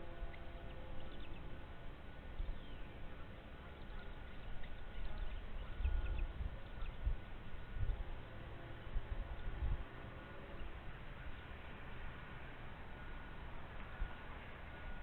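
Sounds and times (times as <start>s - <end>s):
wind rumble: 4.4s - 10.1s.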